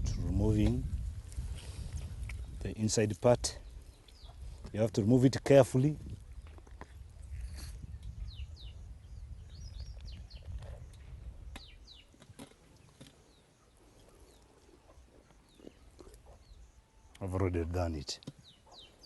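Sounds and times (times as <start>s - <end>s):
small birds chirping: 3.6s - 5.1s, 6.2s - 19.0s.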